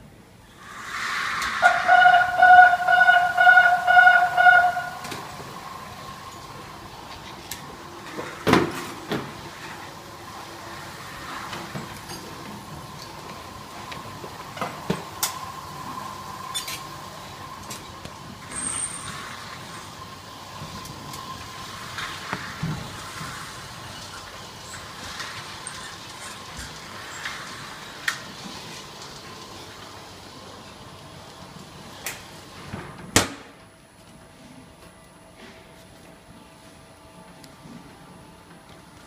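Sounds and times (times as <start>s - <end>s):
machine humming: 0.6s - 26.1s.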